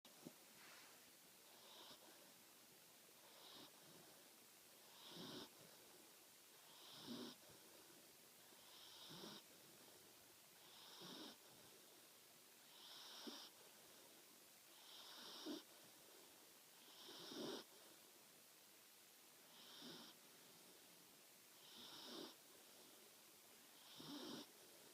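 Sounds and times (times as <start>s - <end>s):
puppy snoring faintly: 0.1s - 2.4s, 3.1s - 18.1s, 19.4s - 24.9s.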